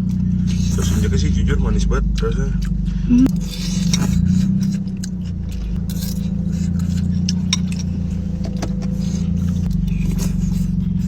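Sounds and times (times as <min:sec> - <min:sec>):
car engine idling: 0:00.0 - 0:11.0
eating clicks and scrapes: 0:02.6 - 0:11.0.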